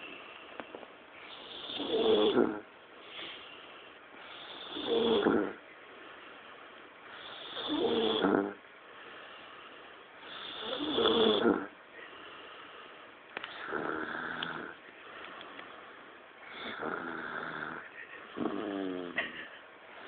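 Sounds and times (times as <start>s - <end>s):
man snoring: 1.4s - 2.6s, 4.4s - 5.6s, 7.2s - 8.6s, 10.3s - 11.8s, 13.5s - 14.8s, 16.5s - 19.2s.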